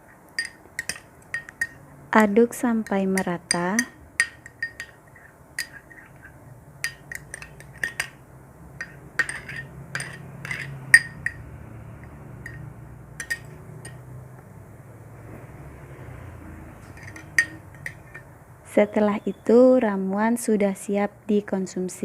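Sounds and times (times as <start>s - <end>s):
spoon clinking against dish: 0.4s - 1.8s, 2.8s - 8.2s, 8.8s - 11.4s, 12.0s - 14.0s, 16.8s - 18.3s.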